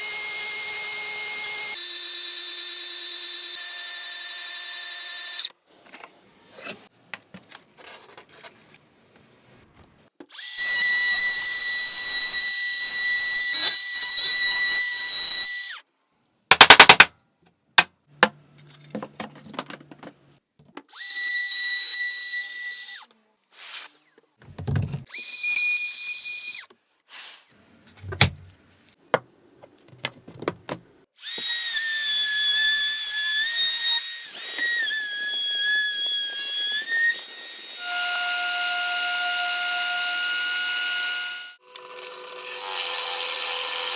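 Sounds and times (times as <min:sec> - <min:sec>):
sharp knocks: 0:16.5 - 0:17.1
power tool cutting wood: 0:31.2 - 0:43.9.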